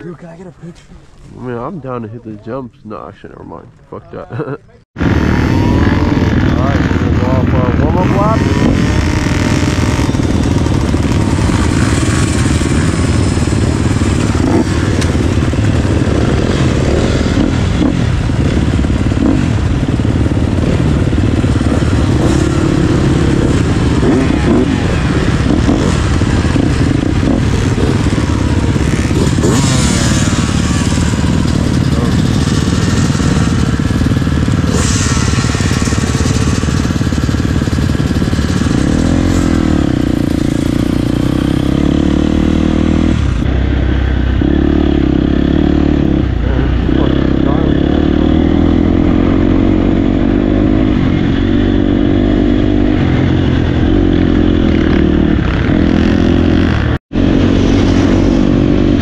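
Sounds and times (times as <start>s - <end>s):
dirt bike engine running: 4.4s - 59.0s.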